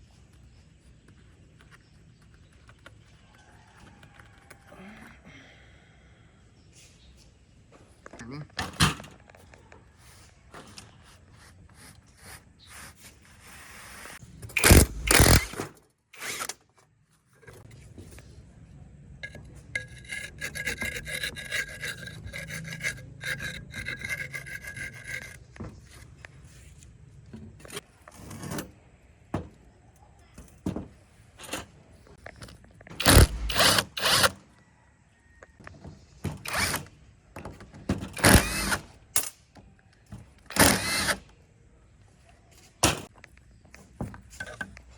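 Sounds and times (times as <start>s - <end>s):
scraping on metal: 19.1s - 26.9s.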